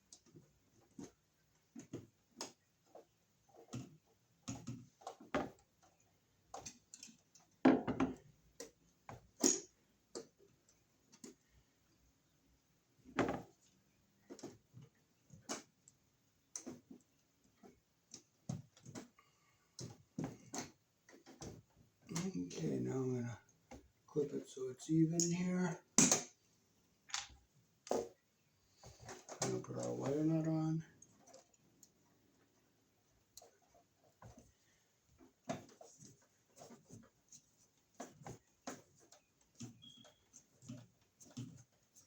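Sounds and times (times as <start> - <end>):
wires clicking and tapping: 0.0 - 12.4, 13.0 - 26.4, 27.0 - 42.0.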